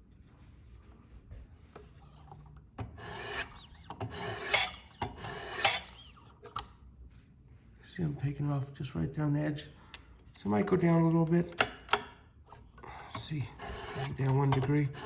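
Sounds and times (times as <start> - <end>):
sharpening stone scraping knife edge: 3.0 - 6.2, 13.6 - 15.0.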